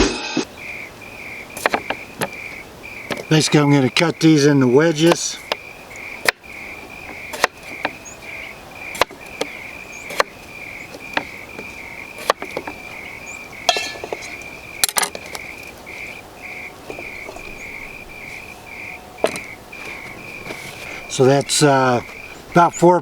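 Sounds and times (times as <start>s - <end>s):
insects chirping: 0.4s - 23.0s
knife cutting potatoes on board: 7.3s - 7.9s, 8.9s - 11.3s.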